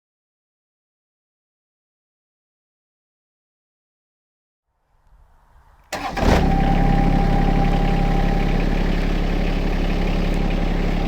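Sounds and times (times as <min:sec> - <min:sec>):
diesel engine starting and idling: 0:05.5 - 0:11.0.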